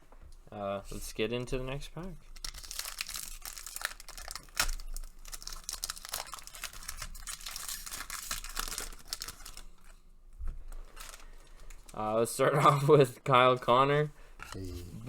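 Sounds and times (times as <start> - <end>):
wrapper tearing and crinkling: 2.4 - 9.9, 10.9 - 11.8.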